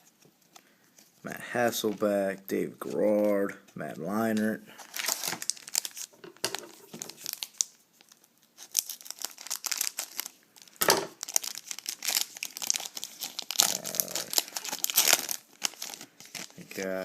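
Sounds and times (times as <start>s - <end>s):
foil wrapper crinkling: 4.7s - 17.0s.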